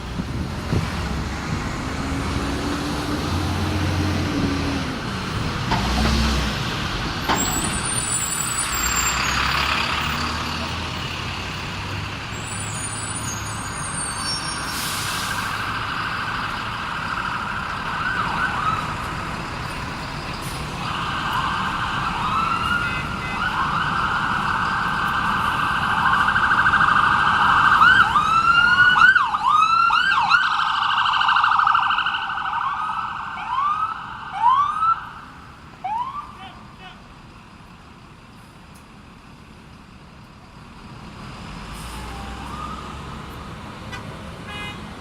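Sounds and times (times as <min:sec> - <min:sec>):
electronic emergency sirens: 0:17.0 - 0:19.1, 0:20.8 - 0:36.6, 0:42.1 - 0:43.3.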